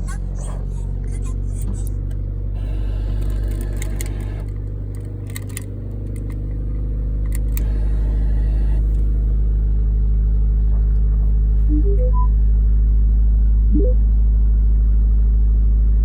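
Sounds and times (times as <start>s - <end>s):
car engine idling: 0.0s - 10.4s
sharp clicks: 3.0s - 6.6s, 7.2s - 8.0s.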